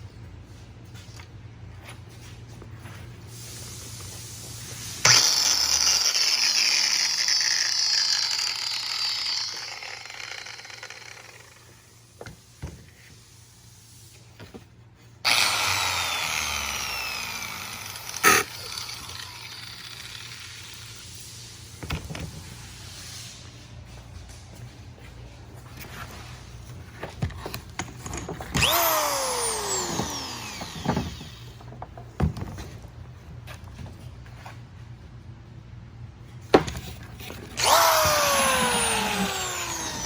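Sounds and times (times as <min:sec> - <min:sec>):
power tool motor whine: 0:05.0 - 0:11.7, 0:15.3 - 0:20.6, 0:28.5 - 0:31.5, 0:37.6 - 0:40.0.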